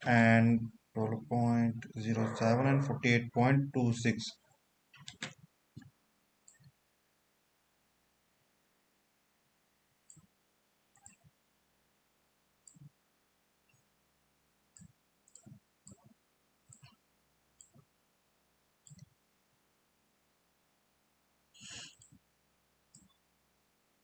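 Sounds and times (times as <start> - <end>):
mouse buttons clicking: 18.9 - 19.1.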